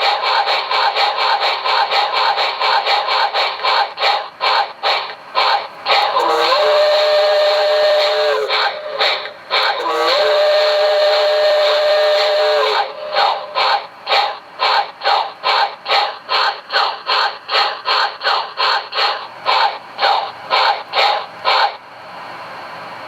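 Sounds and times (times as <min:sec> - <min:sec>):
steam locomotive chuffing: 0:00.0 - 0:23.0
steam whistle blowing: 0:06.0 - 0:13.8.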